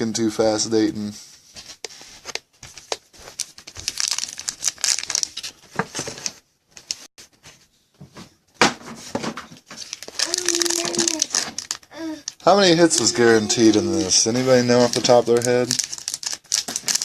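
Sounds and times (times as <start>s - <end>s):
plastic packaging crinkling and tearing: 2.8s - 6.4s, 9.6s - 17.0s.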